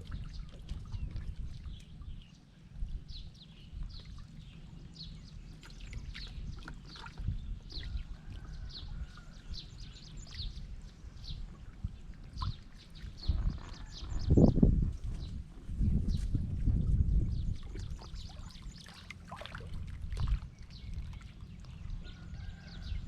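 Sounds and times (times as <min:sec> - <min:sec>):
small birds chirping: 0:00.1 - 0:19.2
steady low rumble: 0:07.2 - 0:23.0.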